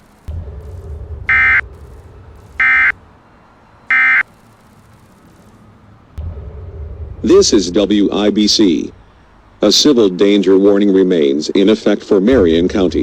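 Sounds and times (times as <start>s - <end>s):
low rumble: 0.3s - 3.8s, 6.2s - 9.7s
digital data tone bursts: 1.3s - 3.0s, 3.9s - 5.6s.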